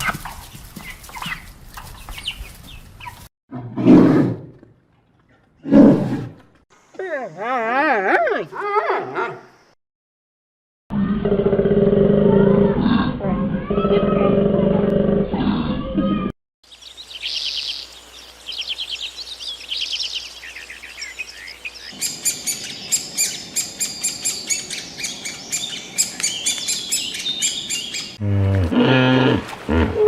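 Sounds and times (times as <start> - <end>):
songbirds singing: 0.8 - 3.2, 16.6 - 28.2.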